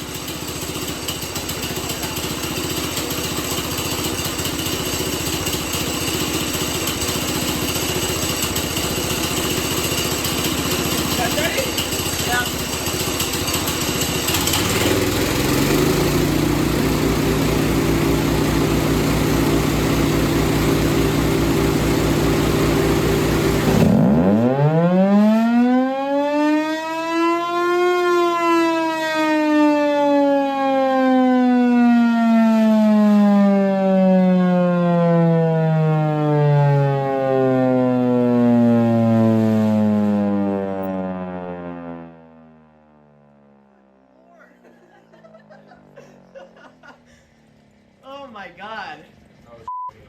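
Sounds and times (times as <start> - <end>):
siren blower rushing hum: 14.6 - 44.1.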